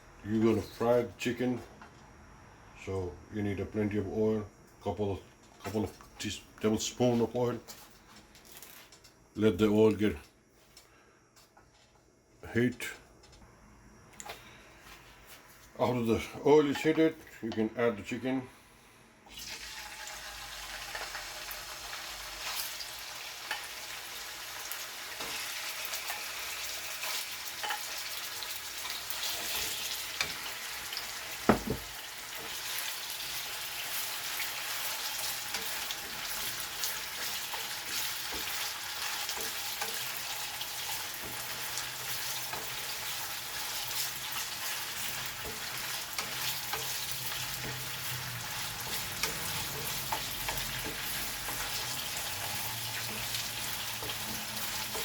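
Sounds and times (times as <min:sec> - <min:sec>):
chicken sizzling in oil: 0:19.3 - 0:55.0.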